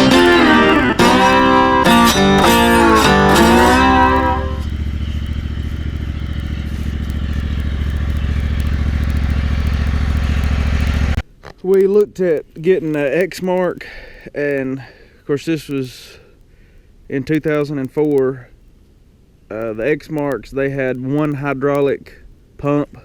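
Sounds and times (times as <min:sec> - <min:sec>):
guitar music: 0:00.0 - 0:08.2
mower engine running: 0:00.0 - 0:11.2.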